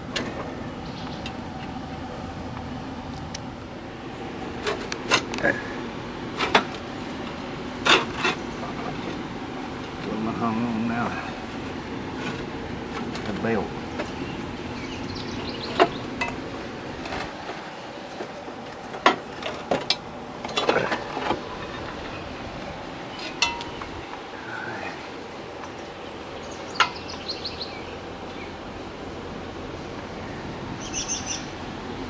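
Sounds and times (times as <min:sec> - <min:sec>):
metal tools clinking on metal frame: 0:23.2 - 0:23.8.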